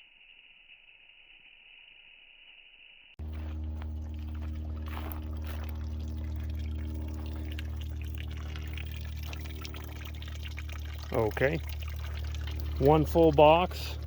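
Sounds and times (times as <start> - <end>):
soda fizzing and trickling: 3.2 - 14.0
steady low hum: 3.2 - 14.0.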